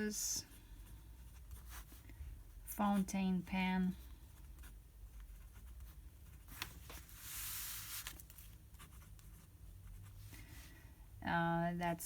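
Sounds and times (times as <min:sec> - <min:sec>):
fountain pen scratching on paper: 0:04.5 - 0:06.5, 0:08.8 - 0:10.0.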